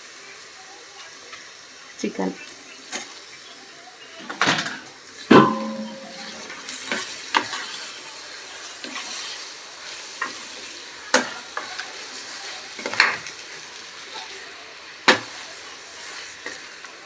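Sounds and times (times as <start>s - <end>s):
chicken sizzling in a pan: 0.0s - 17.0s
loud metal clank: 5.3s - 6.6s.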